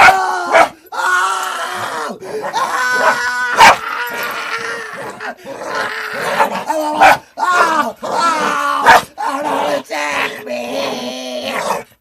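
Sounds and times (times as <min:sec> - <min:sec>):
dog barking: 0:00.0 - 0:00.8, 0:03.0 - 0:03.8, 0:07.0 - 0:07.2, 0:08.8 - 0:09.1.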